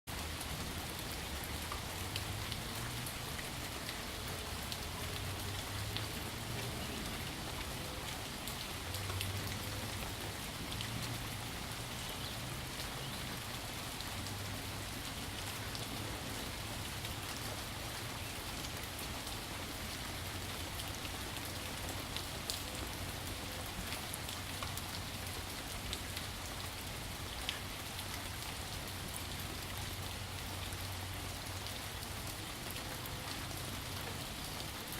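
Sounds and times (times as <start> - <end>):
steady rain hiss: 0.1 - 34.9
raindrop ticks: 1.4 - 11.4.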